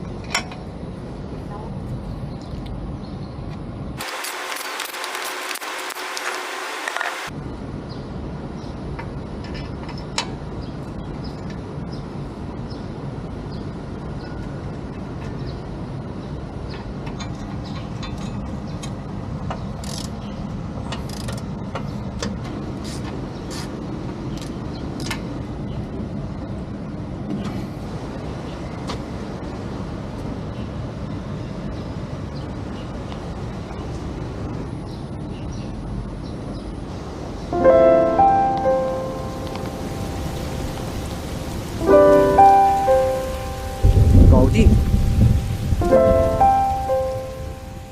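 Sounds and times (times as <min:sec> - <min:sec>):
low vehicle rumble: 0:10.7 - 0:47.9.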